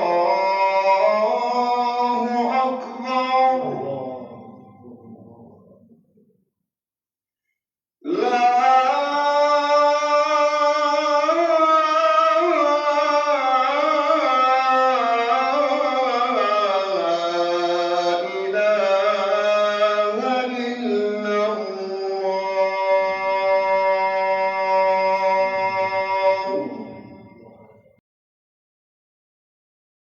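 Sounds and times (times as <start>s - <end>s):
solo voice chanting melodically: 0.0s - 5.8s, 8.0s - 28.0s.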